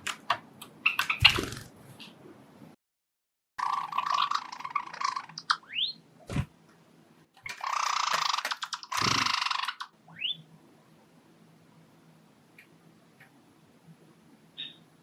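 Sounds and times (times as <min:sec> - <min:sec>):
sparrow singing: 0:03.6 - 0:06.0, 0:07.6 - 0:10.5, 0:14.6 - 0:14.9.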